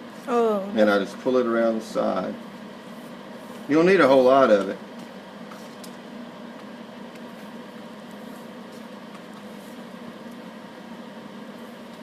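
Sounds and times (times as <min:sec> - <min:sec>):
small fan humming: 0:00.0 - 0:12.0.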